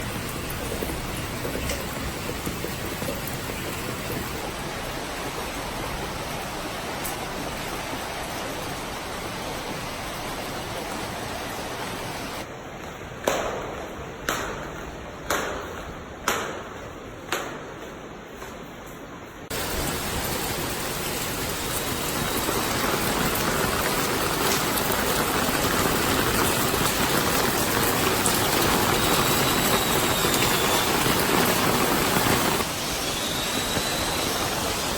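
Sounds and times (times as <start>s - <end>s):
heavy rain: 0.0s - 12.5s, 19.5s - 34.9s.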